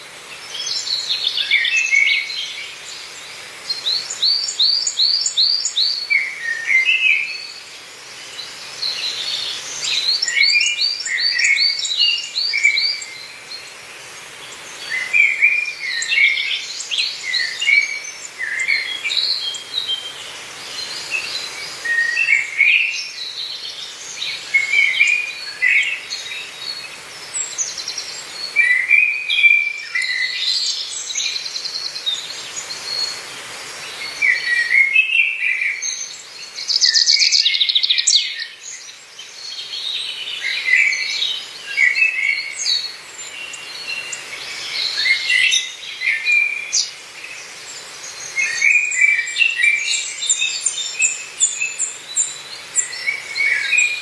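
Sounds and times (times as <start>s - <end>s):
faint steady hiss: 0.0s - 54.0s
songbirds chirping and trilling: 0.0s - 54.0s.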